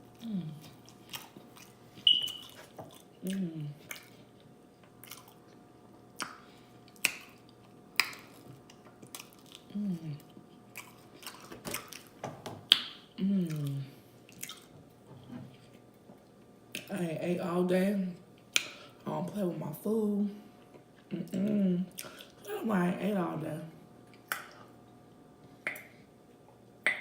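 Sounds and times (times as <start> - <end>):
person chewing and lip-smacking: 0.1 - 14.8, 18.4 - 18.8, 20.7 - 22.4, 24.1 - 24.7, 25.6 - 26.0
person humming mm: 0.2 - 0.8, 3.2 - 3.8, 9.7 - 10.3, 13.2 - 14.0, 21.1 - 22.0
sharp mouth clicks: 25.6 - 25.9.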